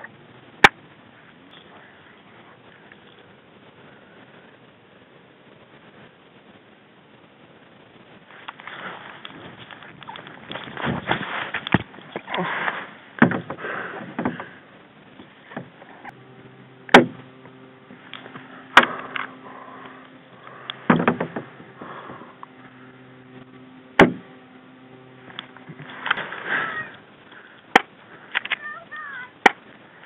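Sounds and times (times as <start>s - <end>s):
steady low hum: 0.0s - 30.0s
rustling: 1.1s - 30.0s
airsoft gun shots: 16.9s - 17.2s.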